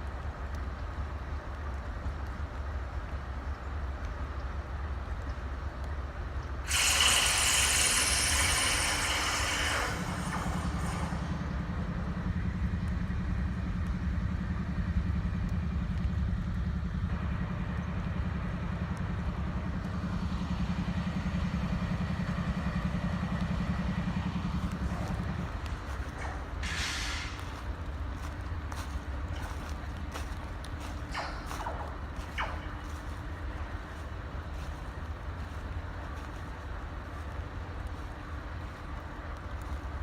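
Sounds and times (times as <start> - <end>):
locomotive engine rumbling: 0.0 - 40.0
loud hiss with whistle tone: 6.6 - 11.6, 26.6 - 27.4.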